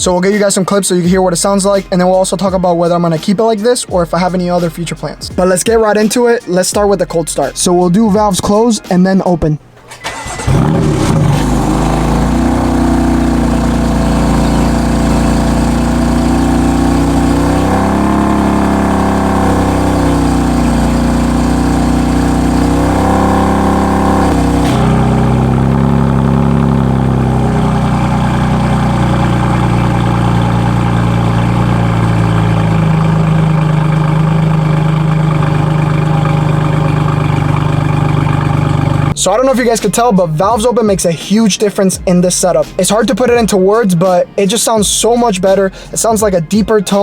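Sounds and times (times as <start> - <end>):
car engine idling: 9.6 - 40.7.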